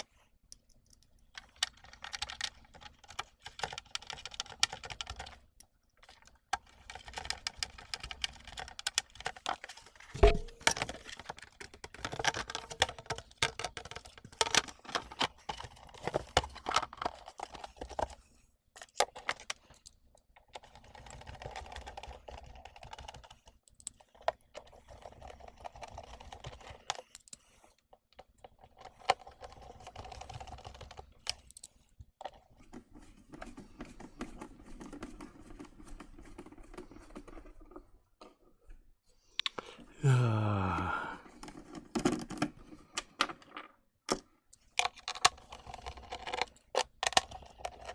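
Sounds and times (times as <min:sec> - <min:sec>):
plastic parts clicking and tapping: 0:00.0 - 0:18.2, 0:18.8 - 0:27.4, 0:41.4 - 0:47.9.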